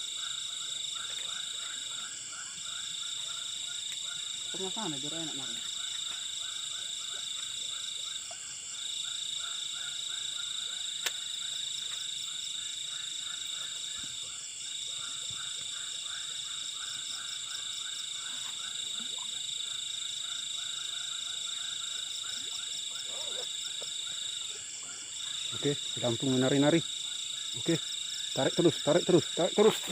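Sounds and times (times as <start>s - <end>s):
frogs calling: 0.0s - 29.9s
high-pitched insect whine: 0.0s - 29.9s.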